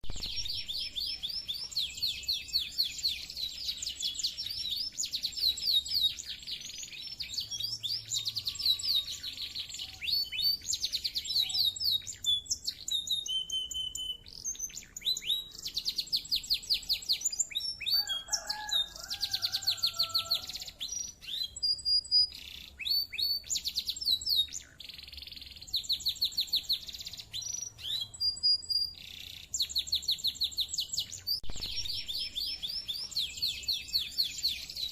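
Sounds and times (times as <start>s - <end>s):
canary singing trills: 0.0s - 34.9s.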